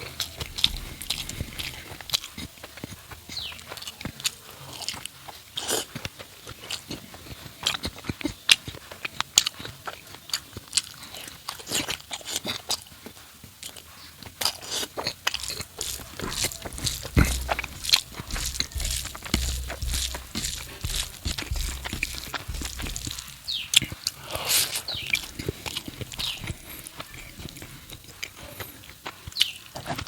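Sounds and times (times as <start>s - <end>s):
close chewing and mouth clicks: 0.0s - 30.0s
low bumps: 15.3s - 23.5s.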